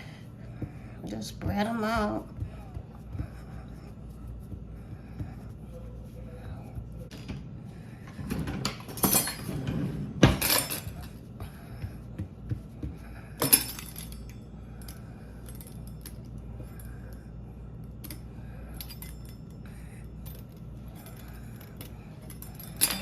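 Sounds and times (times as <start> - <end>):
low steady hum: 0.0 - 23.0
utensils and dishes clinking: 8.1 - 11.2, 13.4 - 16.3, 20.3 - 23.0.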